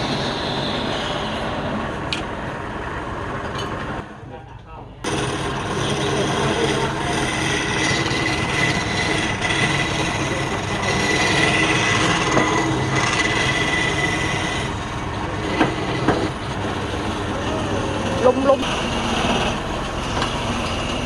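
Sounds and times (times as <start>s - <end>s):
wood lathe running: 5.0s - 21.0s.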